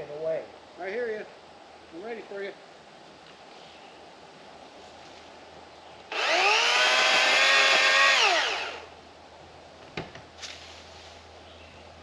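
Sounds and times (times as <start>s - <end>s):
electric chainsaw motor whining: 6.1s - 8.9s.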